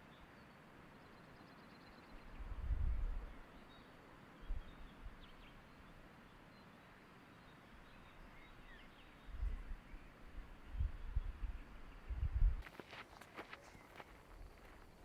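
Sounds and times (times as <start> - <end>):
faint steady hiss: 0.0 - 15.0
faint bird chirps: 13.1 - 15.0.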